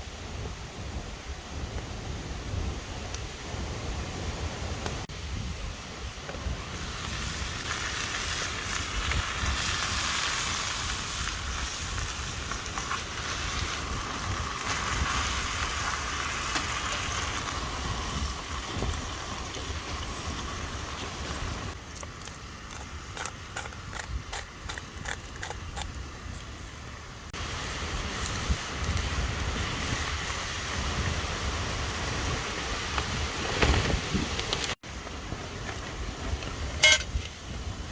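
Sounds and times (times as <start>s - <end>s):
wind rumbling on microphone: 0.0s - 37.9s
campfire crackles and pops: 6.2s - 26.5s, 27.4s - 31.2s.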